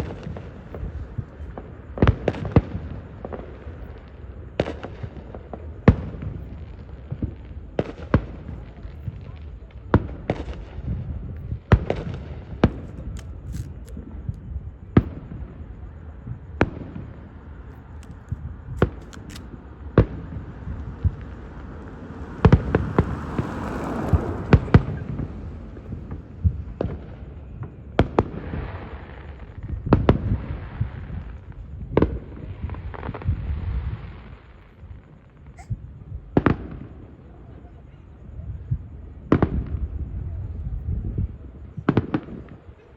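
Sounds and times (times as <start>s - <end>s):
fireworks bursting: 11.8s - 14.3s, 16.7s - 26.2s.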